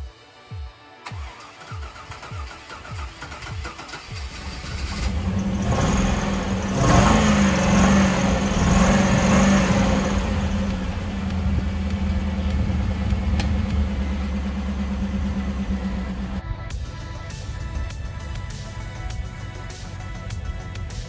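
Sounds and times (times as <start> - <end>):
spinning tyre noise: 3.2 - 16.4
car engine revving: 3.7 - 16.4.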